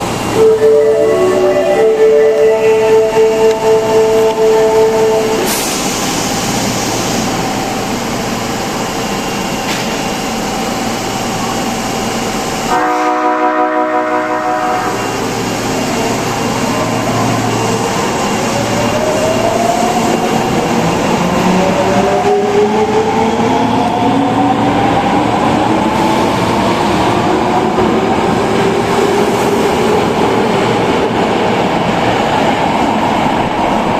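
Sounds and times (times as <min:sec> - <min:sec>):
train running noise: 0:00.0 - 0:33.9
train horn: 0:00.4 - 0:05.5, 0:12.7 - 0:15.1.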